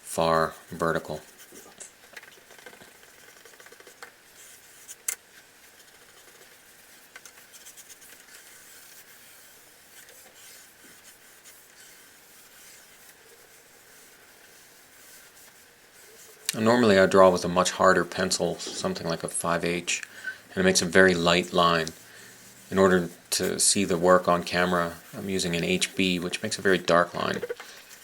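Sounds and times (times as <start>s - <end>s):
pencil scratching on paper: 5.7s - 17.4s, 20.6s - 28.0s.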